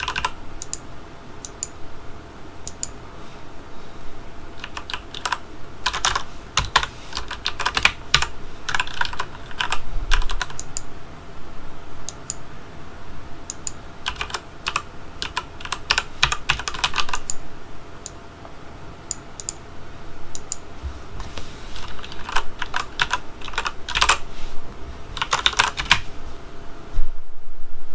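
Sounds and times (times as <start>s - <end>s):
mechanical keyboard typing: 0.0s - 0.8s, 4.6s - 10.9s, 13.5s - 17.4s, 21.8s - 24.3s, 25.2s - 26.0s.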